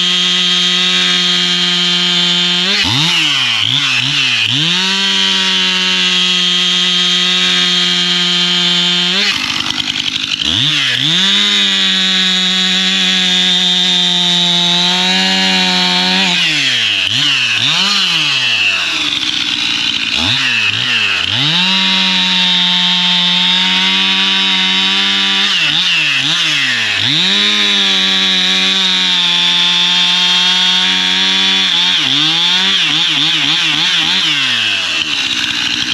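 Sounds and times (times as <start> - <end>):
chainsaw engine revving: 0.0 - 35.9.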